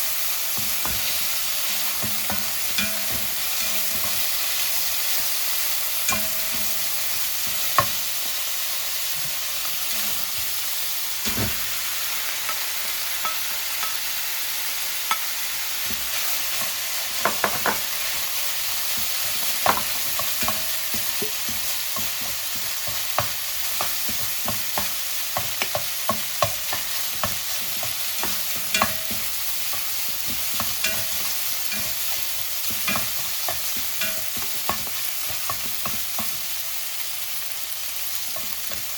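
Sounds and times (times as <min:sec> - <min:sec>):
rice sizzling in a pan: 0:00.0 - 0:38.9
utensil tapping a pan: 0:00.5 - 0:05.4, 0:06.0 - 0:08.4, 0:15.1 - 0:36.6, 0:38.2 - 0:38.9.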